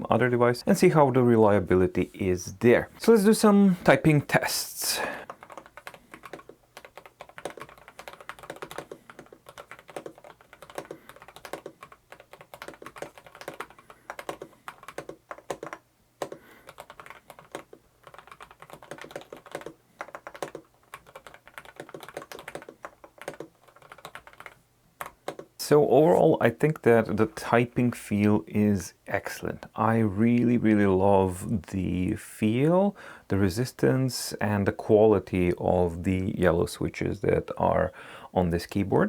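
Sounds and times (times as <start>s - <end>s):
mechanical keyboard typing: 5.2s - 25.6s.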